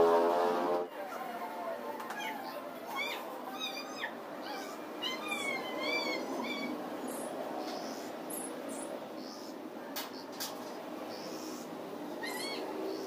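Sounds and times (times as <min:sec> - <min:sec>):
high-pitched animal calls: 0:02.1 - 0:06.8, 0:12.2 - 0:13.0.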